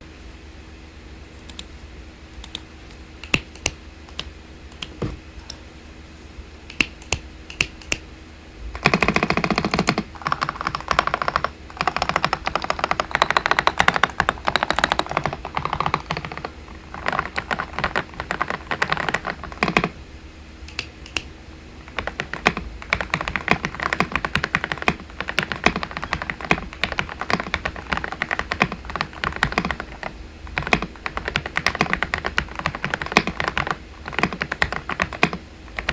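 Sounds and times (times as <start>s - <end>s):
typing on mechanical keyboard: 3.2s - 4.3s, 8.8s - 20.0s, 21.9s - 35.9s.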